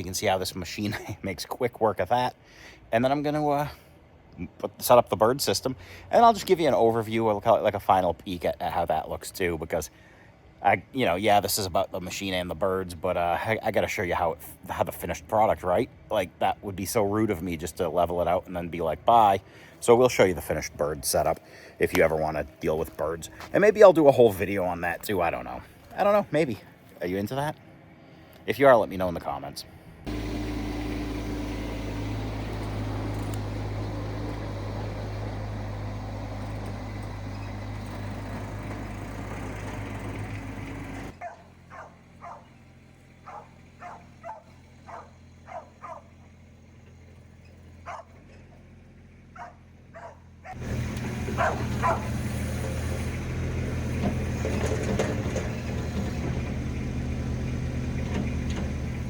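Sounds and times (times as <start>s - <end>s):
skid steer engine running: 30.0s - 59.0s
dog barking: 41.2s - 42.5s, 43.2s - 46.1s, 47.8s - 48.2s, 49.4s - 50.6s, 51.4s - 52.2s.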